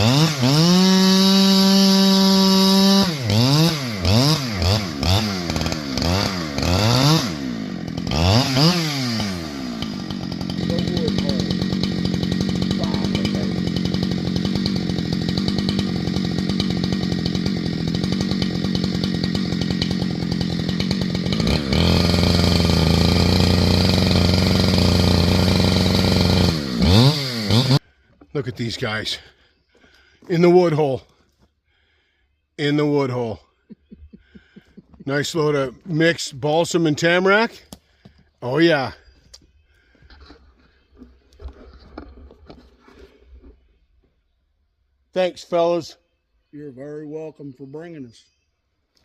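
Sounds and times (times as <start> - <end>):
chainsaw revving: 0.0 - 31.2, 34.2 - 39.2
engine running steadily: 7.2 - 27.8.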